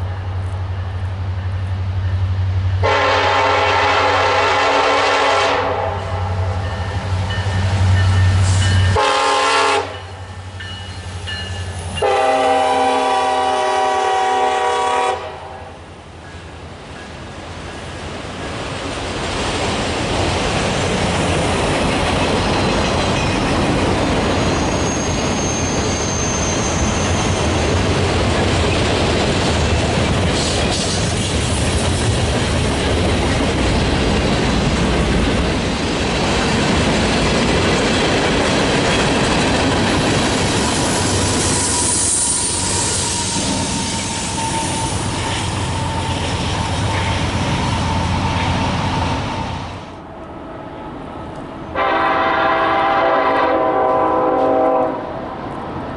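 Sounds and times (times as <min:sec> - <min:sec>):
freight train wheels rumbling: 0:00.0 - 0:55.9
clickety-clack over rail joints: 0:16.2 - 0:26.0, 0:26.6 - 0:41.5
high wheel squeal: 0:24.2 - 0:27.8, 0:40.7 - 0:49.7
lower wheel squeal: 0:24.3 - 0:27.8, 0:40.8 - 0:49.6.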